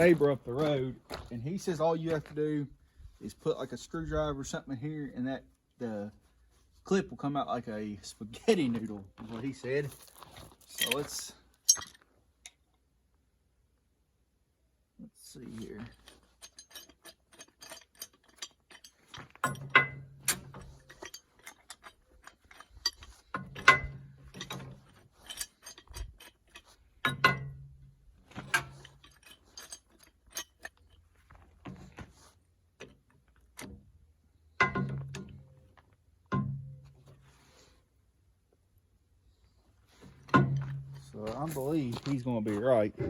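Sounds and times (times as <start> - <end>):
screwdriver scraping metal clip: 15.6 - 27.2, 28.4 - 31.0.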